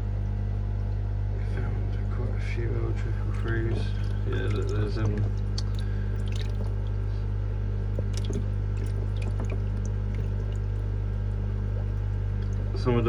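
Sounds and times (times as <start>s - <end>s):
low hum of pumps and filters: 0.0s - 13.0s
small water splashes: 2.9s - 12.9s
water dripping and trickling: 3.0s - 12.8s.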